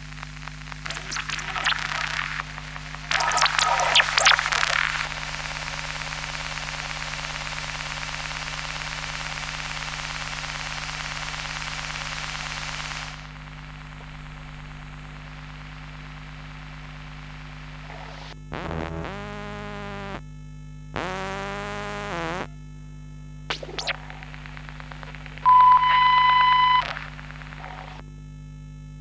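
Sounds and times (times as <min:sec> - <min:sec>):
electrical static crackle: 0:00.0 - 0:20.2, 0:21.0 - 0:22.6, 0:23.4 - 0:28.2
constant low hum: 0:23.3 - 0:28.2
thin high whining tones: 0:25.1 - 0:28.0.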